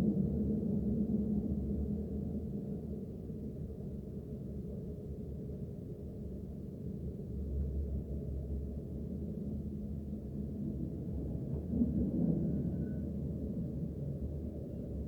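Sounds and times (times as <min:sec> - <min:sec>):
faint high squeal: 0:12.5 - 0:13.2.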